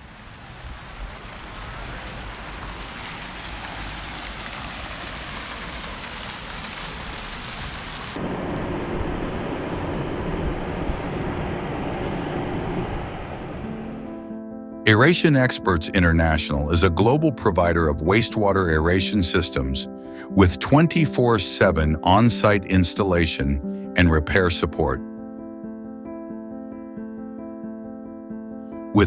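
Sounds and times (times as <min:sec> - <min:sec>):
rushing water: 0:00.0 - 0:08.4.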